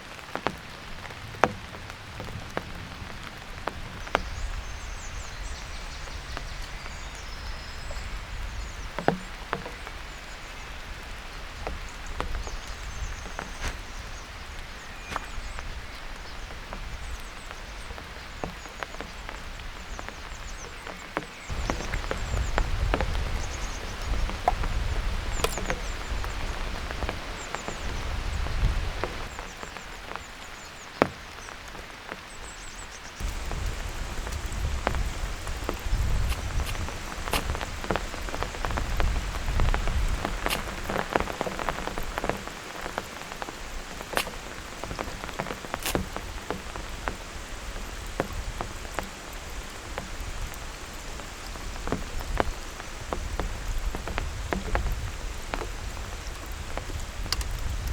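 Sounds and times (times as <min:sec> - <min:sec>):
heavy rain: 0:00.0 - 0:57.9
raindrops tapping: 0:00.0 - 0:57.9.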